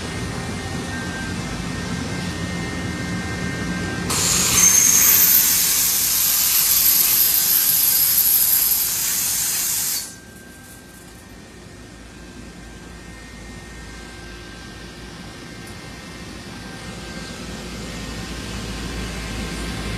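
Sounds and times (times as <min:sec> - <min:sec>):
compressed air hissing from nozzle: 0:04.1 - 0:10.2.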